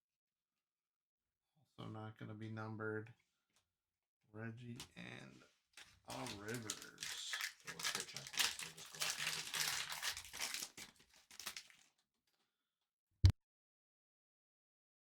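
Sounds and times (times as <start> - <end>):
plastic wrapper crinkling and tearing: 5.8 - 12.1.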